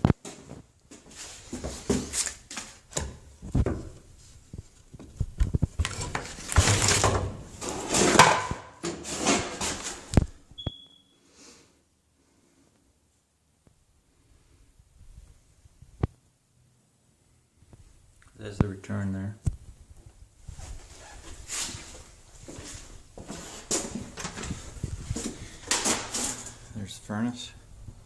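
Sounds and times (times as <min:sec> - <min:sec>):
short high beep: 0:10.6 - 0:11.2
rustling: 0:20.4 - 0:26.7.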